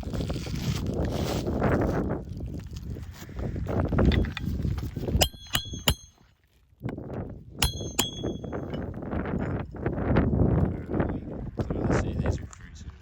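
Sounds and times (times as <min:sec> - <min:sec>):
hammer striking nails: 0:05.2 - 0:06.1, 0:07.6 - 0:08.8.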